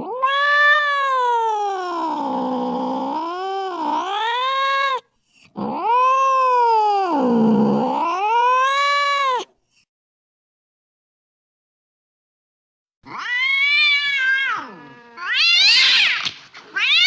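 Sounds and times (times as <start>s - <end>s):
angry cat yowling: 0.0s - 5.0s, 5.6s - 9.5s, 13.1s - 17.0s.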